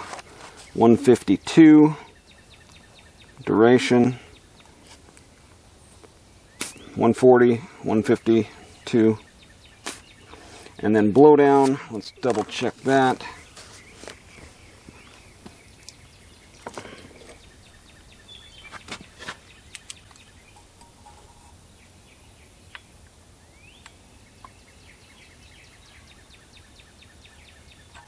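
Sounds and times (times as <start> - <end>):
faint bird chirps: 13.4 - 28.0.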